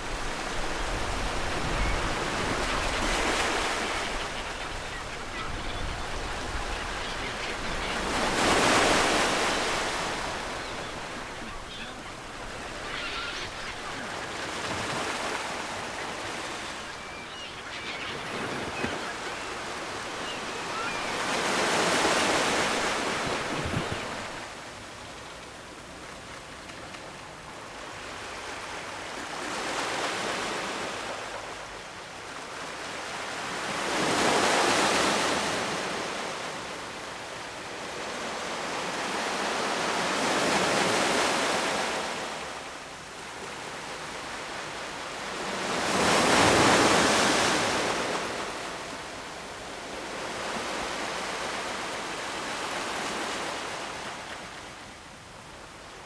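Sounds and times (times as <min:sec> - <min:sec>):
waves breaking on shore: 0:00.0 - 0:24.6, 0:43.2 - 0:54.8.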